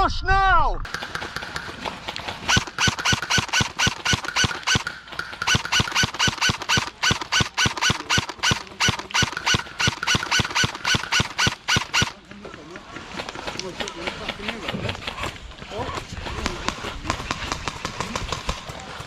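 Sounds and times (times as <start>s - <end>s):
rhythmic squeaking of gear: 2.5s - 12.1s.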